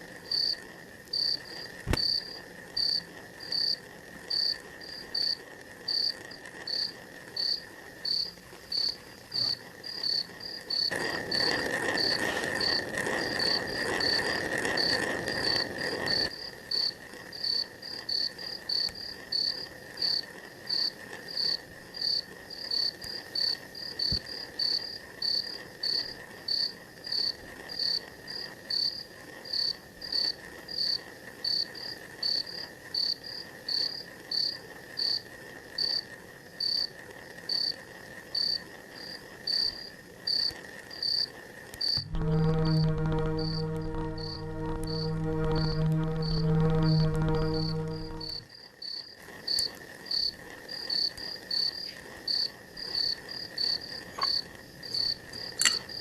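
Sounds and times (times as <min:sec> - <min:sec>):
rushing noise: 0:42.0 - 0:48.4.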